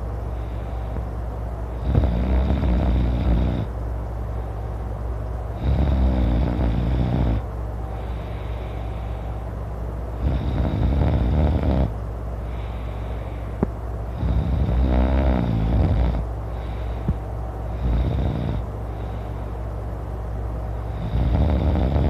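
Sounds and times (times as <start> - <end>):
steady low hum: 0.0 - 22.0
man snoring loudly: 1.8 - 3.7, 5.6 - 7.4, 10.2 - 11.9, 14.2 - 16.2, 17.8 - 18.6, 20.9 - 22.0.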